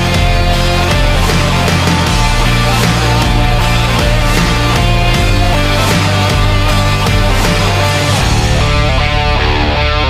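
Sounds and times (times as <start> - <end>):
rock music with electric guitar: 0.0 - 10.0.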